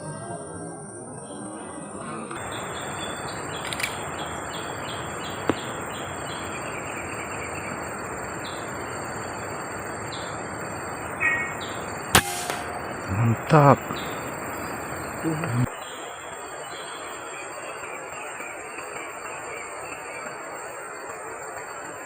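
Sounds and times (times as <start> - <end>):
bird chirping: 2.4 - 20.3
constant hiss: 2.4 - 22.0
high insect whine: 2.4 - 22.0
sharp click: 3.6 - 4.0, 12.2 - 12.7.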